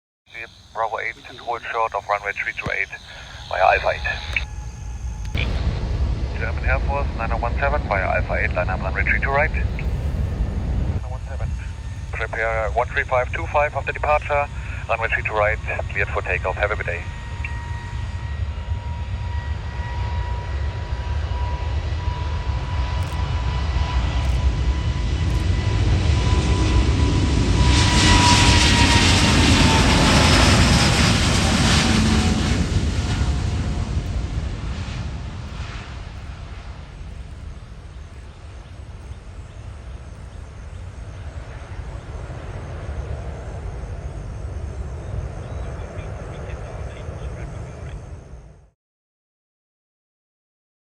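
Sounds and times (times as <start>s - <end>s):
jet engines powering up: 0.4s - 48.5s
thin high tone: 0.6s - 5.5s.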